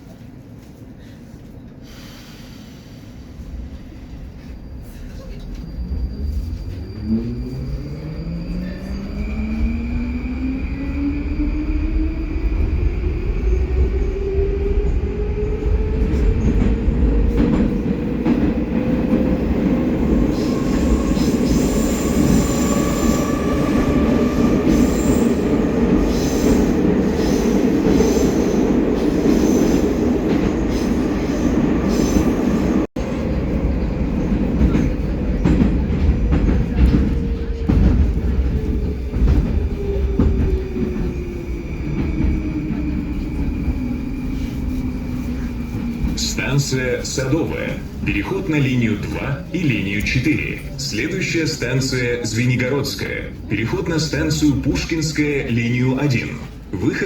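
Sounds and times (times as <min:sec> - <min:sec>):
wheels squealing: 0:04.4 - 0:09.9.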